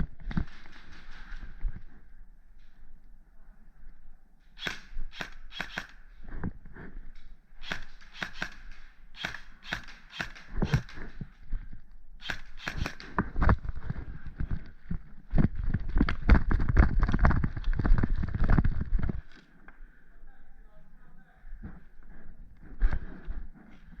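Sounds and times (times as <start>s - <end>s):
airsoft guns firing: 4.6s - 6.0s, 7.6s - 11.0s, 12.2s - 13.3s.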